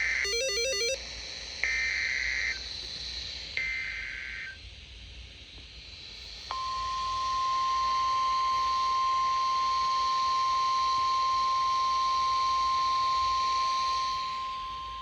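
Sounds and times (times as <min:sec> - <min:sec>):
faint radio hiss: 0:00.0 - 0:15.0
steady high alarm tone: 0:00.2 - 0:01.0, 0:06.5 - 0:15.0.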